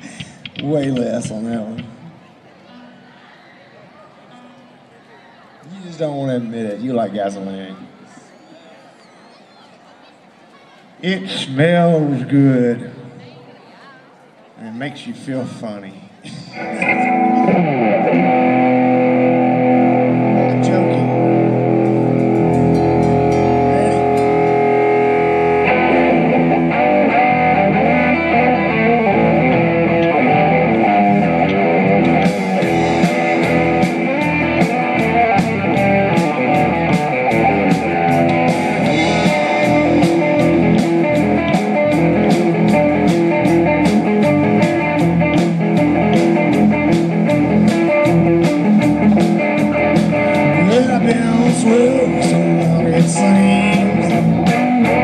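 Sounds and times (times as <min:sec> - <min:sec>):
drums with cymbal hits: 0:00.0 - 0:02.2, 0:21.2 - 0:26.6, 0:31.4 - 0:55.0
bass guitar: 0:16.4 - 0:55.0
guitar chords: 0:16.5 - 0:55.0.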